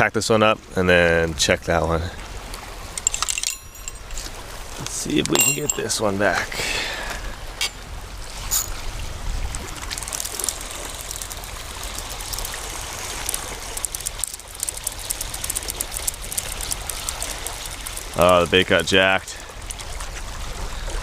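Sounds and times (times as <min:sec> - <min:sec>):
water washing over rocks: 0:02.3 - 0:21.0
light crackle of fine ticks: 0:09.5 - 0:18.8.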